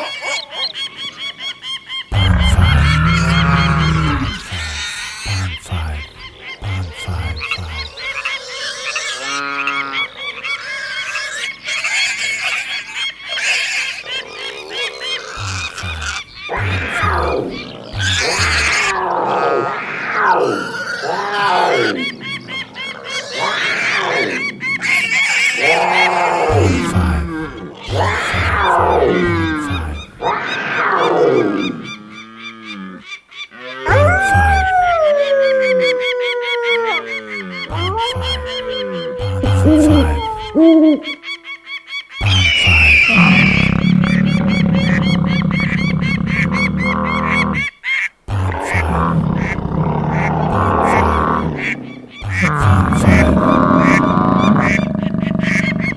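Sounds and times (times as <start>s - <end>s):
cartoon flock of birds calling: 0.0s - 55.9s
animal roaring: 2.1s - 5.2s, 42.4s - 47.7s, 48.3s - 55.9s
short animal calls: 2.1s - 5.7s, 42.2s - 55.9s.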